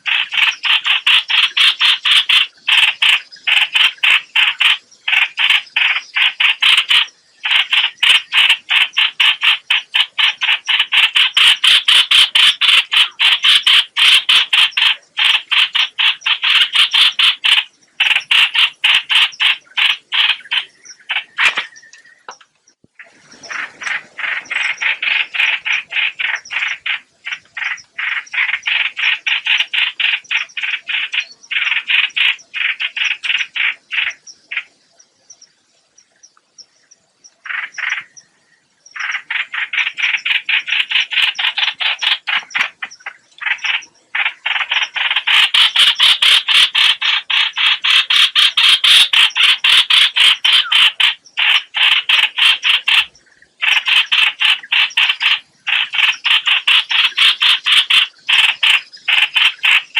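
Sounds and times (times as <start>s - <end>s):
bird harsh croaking calls: 0.0s - 59.9s.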